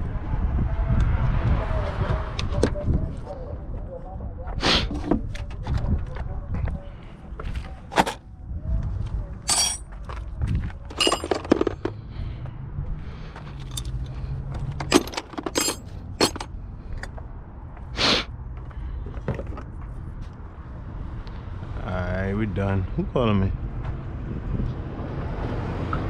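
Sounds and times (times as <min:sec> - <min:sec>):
metal tools clinking: 0:09.5 - 0:09.9, 0:10.9 - 0:11.9, 0:13.6 - 0:17.1.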